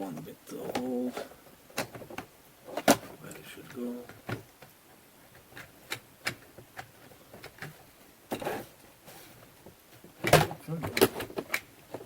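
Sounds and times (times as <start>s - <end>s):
plastic parts clicking and knocking: 0.1s - 1.0s, 1.7s - 8.7s, 9.6s - 12.0s
plastic scraping: 5.3s - 12.0s.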